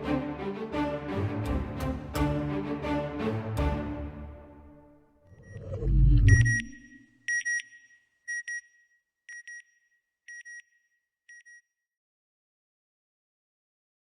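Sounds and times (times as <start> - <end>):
low rumbling: 5.3 - 7.0
electronic double beep: 5.4 - 8.5.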